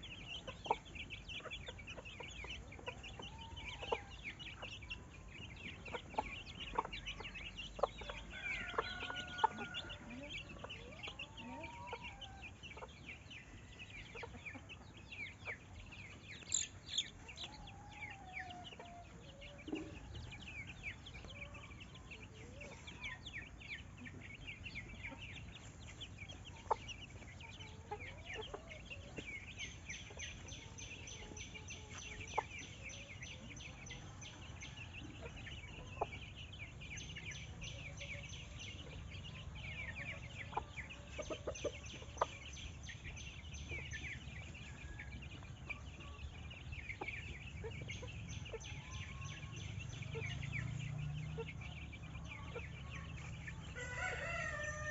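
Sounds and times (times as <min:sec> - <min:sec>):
chickens clucking: 0:00.0 - 0:54.9
small birds chirping: 0:00.0 - 0:54.9.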